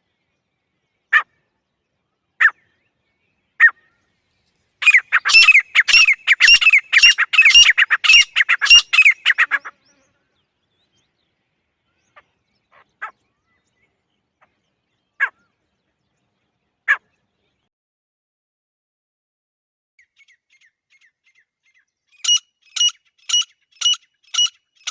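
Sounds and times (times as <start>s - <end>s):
francolin calling: 4.8s - 9.8s, 22.1s - 24.9s.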